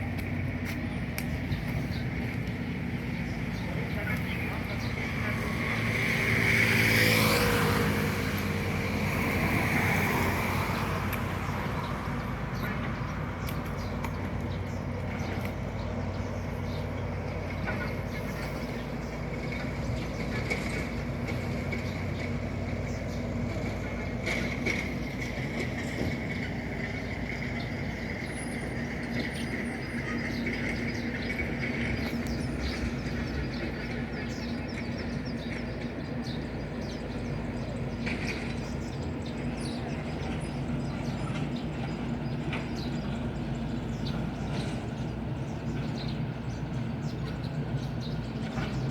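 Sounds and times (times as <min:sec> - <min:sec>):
engine hum: 0:00.0 - 0:48.9
vehicle passing close: 0:03.2 - 0:14.8.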